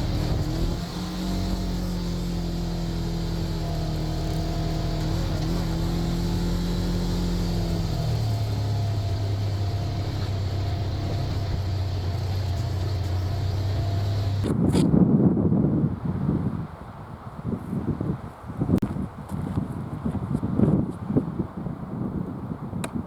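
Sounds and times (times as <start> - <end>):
engine humming: 0.0 - 14.9.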